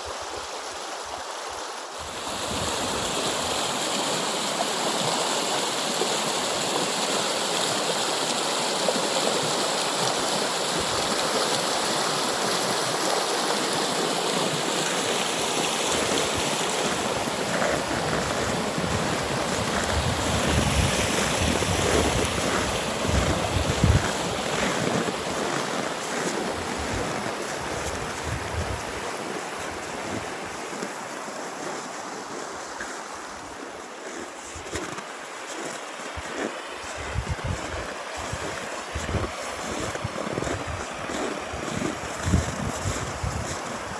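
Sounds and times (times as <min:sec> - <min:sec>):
rushing water: 0:00.0 - 0:43.9
wind rumbling on microphone: 0:16.0 - 0:25.8, 0:26.4 - 0:29.1, 0:36.8 - 0:43.9.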